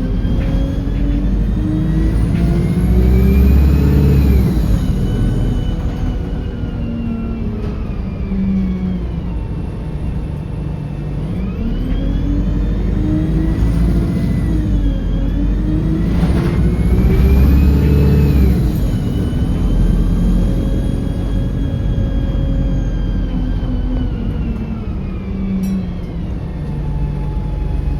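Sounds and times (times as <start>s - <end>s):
diesel locomotive engine: 0.0s - 27.9s
turbocharger whine: 0.0s - 27.9s.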